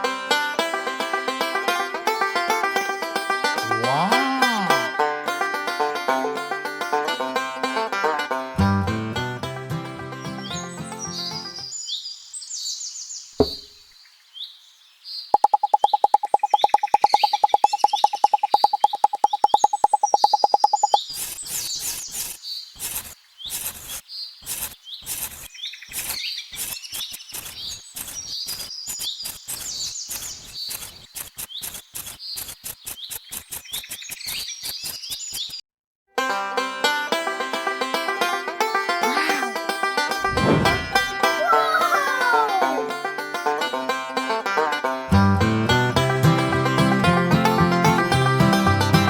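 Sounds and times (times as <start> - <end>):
small birds chirping: 9.8 - 35.6
irregular clicks and taps: 13.4 - 13.7.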